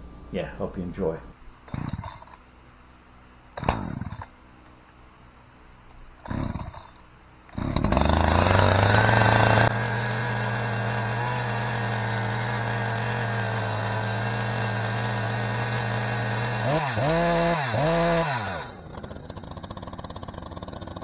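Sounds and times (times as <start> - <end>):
chainsaw engine running: 3.6 - 4.7, 6.1 - 21.0
starter cord pulls: 7.6 - 19.9.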